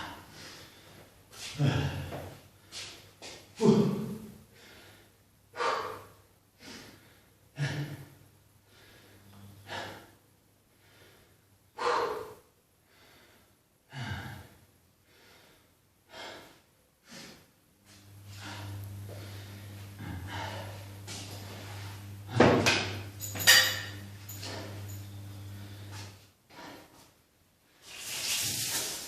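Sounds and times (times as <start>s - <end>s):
person breathing hard: 4.5s - 22.4s.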